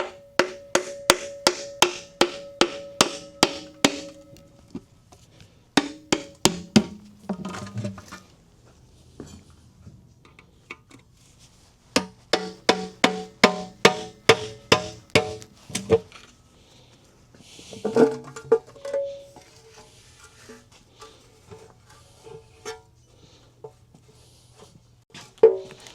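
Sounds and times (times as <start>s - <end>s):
music with sharp percussion: 0.0s - 4.5s, 5.8s - 7.0s, 12.4s - 15.5s.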